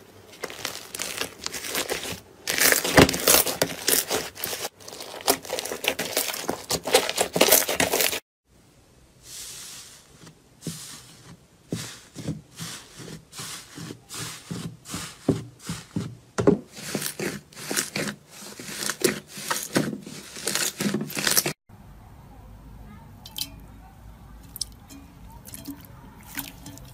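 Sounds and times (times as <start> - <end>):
slime crackling and popping: 0.4 - 8.2.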